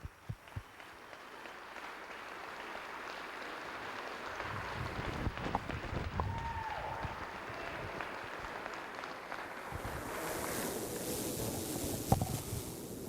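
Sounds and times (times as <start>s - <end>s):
audience applauding: 0.0s - 11.8s.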